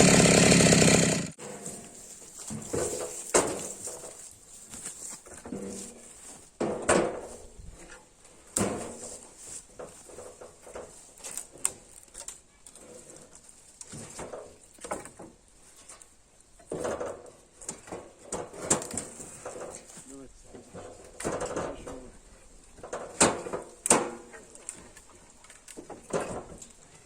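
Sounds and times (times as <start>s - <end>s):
irregular knocks and clatter: 1.4s - 12.3s, 13.1s - 26.8s
quiet rustling: 1.4s - 16.6s.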